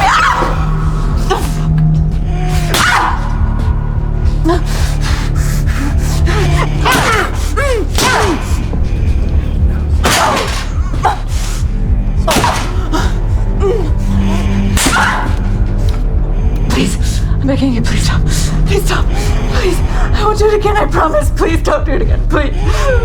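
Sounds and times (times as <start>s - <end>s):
low droning horror score: 0.0s - 23.0s
woman sobbing and crying: 4.2s - 8.8s, 10.2s - 14.7s, 16.7s - 23.0s.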